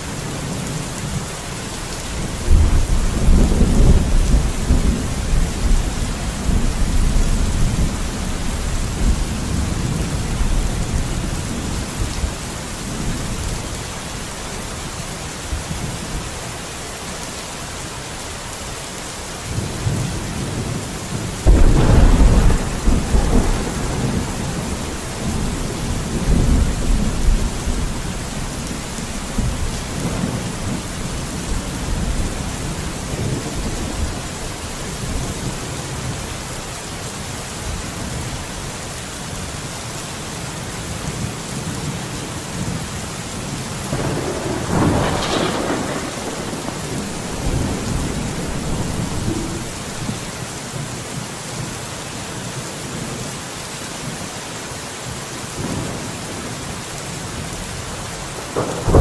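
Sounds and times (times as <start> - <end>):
steady rain: 0.0 - 59.0
rolling thunder: 2.2 - 13.6, 19.8 - 36.2, 43.8 - 50.3, 58.5 - 59.0
loud thunderclap: 2.4 - 11.0, 21.4 - 34.2, 43.9 - 50.3, 58.6 - 59.0.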